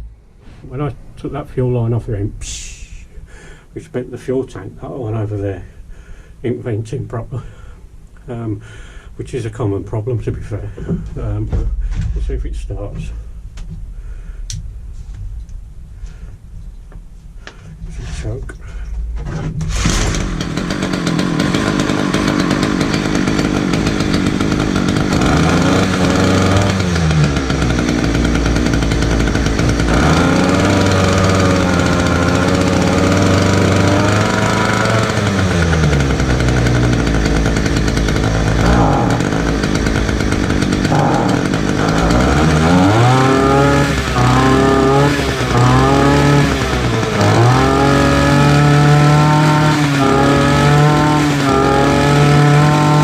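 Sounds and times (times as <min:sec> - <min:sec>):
two-stroke engine revving: 0:19.7 - 0:53.0.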